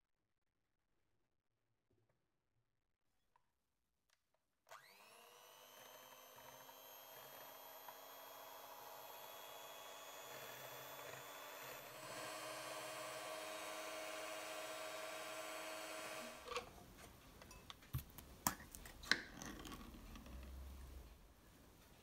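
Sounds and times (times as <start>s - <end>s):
electric motor humming: 4.7s - 16.6s.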